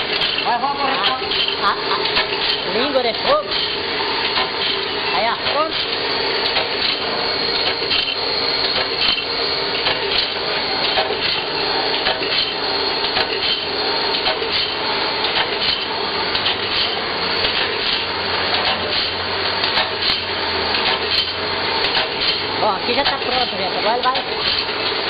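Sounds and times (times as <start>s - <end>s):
sharp mechanical clicks: 5.4s - 23.3s.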